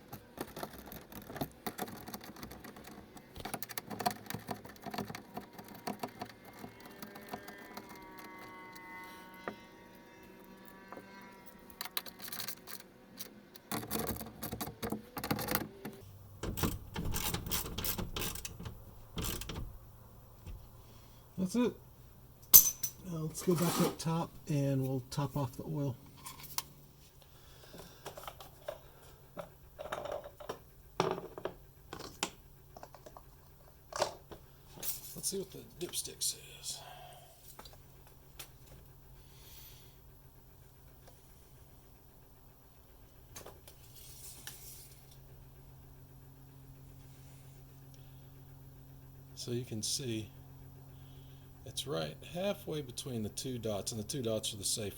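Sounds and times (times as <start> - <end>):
plastic and metal clicks and rattles: 0.0 - 8.3
low background hum: 0.0 - 54.9.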